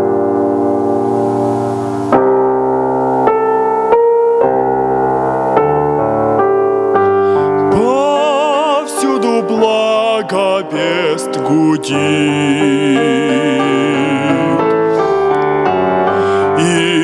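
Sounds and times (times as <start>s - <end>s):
keyboard playing slow chords: 0.0s - 17.0s
person singing with vibrato: 7.0s - 17.0s.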